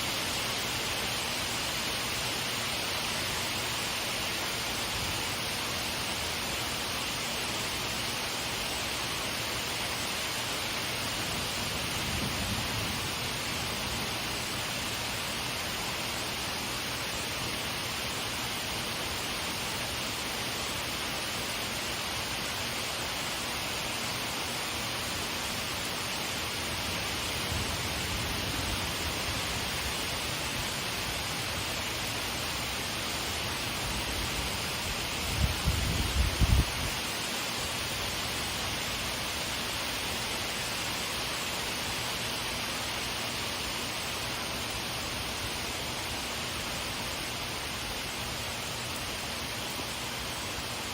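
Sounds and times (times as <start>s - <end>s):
steady rain: 0.0s - 50.9s.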